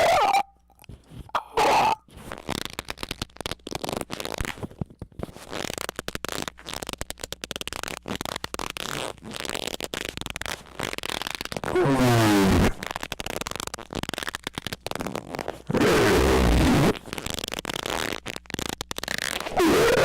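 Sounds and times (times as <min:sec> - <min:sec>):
loud squeal: 0:00.0 - 0:00.5, 0:01.5 - 0:02.0
crackling and rubbing clicks: 0:00.0 - 0:20.0.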